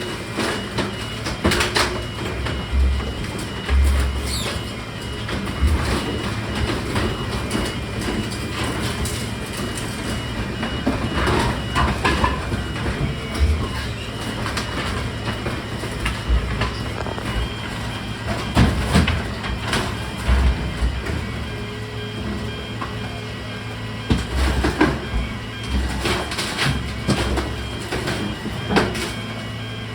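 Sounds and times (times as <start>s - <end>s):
garbage truck engine running: 0.0s - 29.9s
low thumps and clanks: 1.3s - 21.7s.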